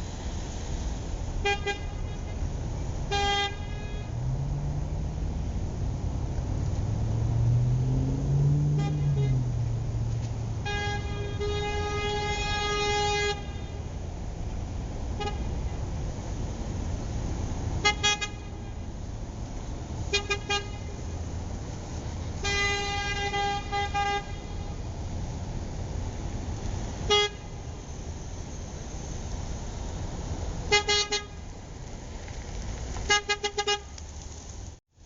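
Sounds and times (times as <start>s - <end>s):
car horn honking: 1.4s - 2.4s, 3.1s - 4.2s, 8.6s - 9.8s, 10.5s - 13.8s, 15.2s - 15.8s, 17.8s - 18.8s, 20.1s - 21.0s, 22.4s - 24.8s, 27.1s - 27.8s, 30.7s - 31.4s, 33.1s - 34.0s.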